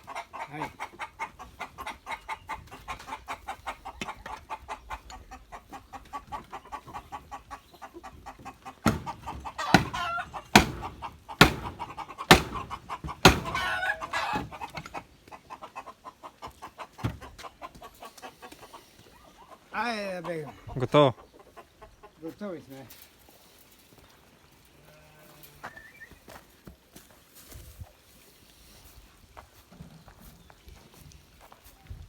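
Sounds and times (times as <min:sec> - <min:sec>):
loud sharp chicken calls: 0:00.0 - 0:22.2
chickens clucking: 0:00.0 - 0:26.9.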